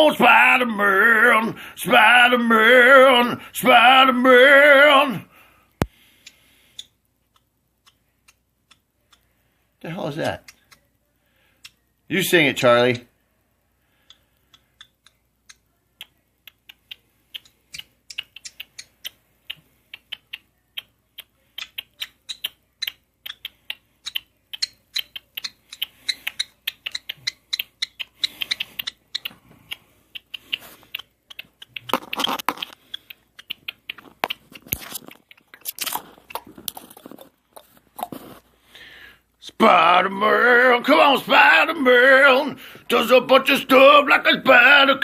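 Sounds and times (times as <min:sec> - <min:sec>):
parrot beak chewing and clicking: 0:05.8 - 0:09.3, 0:10.2 - 0:10.9, 0:14.0 - 0:38.1.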